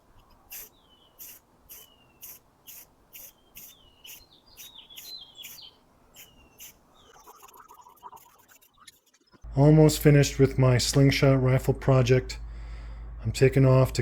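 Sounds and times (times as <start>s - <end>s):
small songbird singing: 0.5s - 7.3s.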